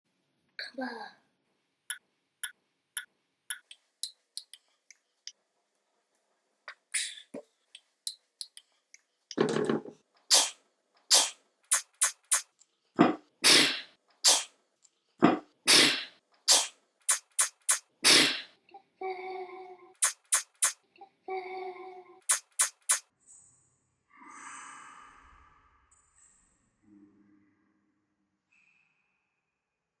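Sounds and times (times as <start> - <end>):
person sneezing: 10.3 - 12.4, 13.0 - 14.5, 15.2 - 18.5.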